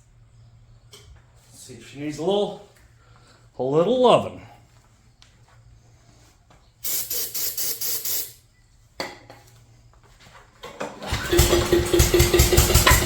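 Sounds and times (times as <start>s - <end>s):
aerosol can spraying: 6.8s - 8.4s
small engine starting and running: 10.8s - 13.0s.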